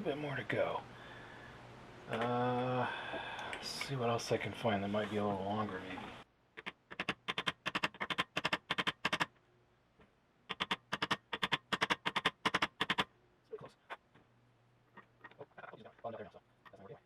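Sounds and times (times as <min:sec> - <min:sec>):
rapid sharp taps: 0:06.6 - 0:09.4, 0:10.0 - 0:13.1.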